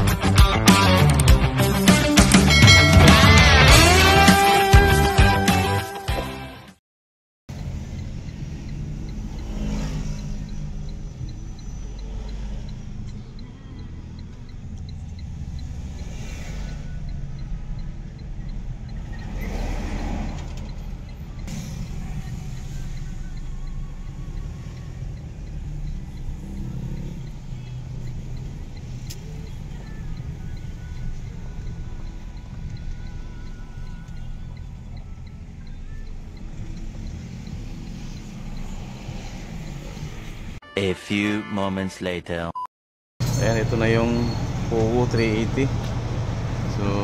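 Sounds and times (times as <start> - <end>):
diesel truck engine idling: 7.5 - 9.6, 10.2 - 40.6.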